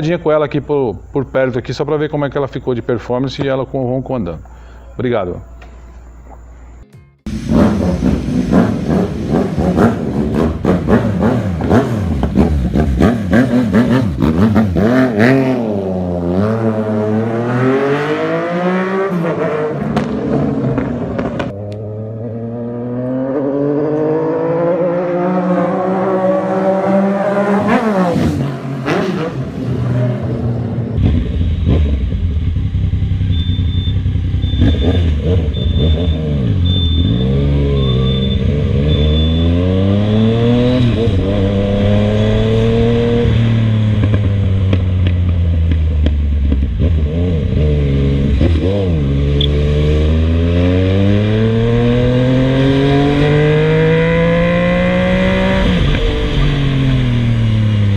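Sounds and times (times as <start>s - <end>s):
motorcycle engine accelerating: 7.3s - 57.9s.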